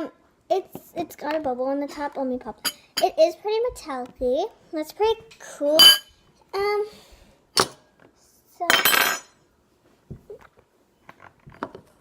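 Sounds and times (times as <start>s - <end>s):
utensil clinking against bowl: 5.8s - 6.1s.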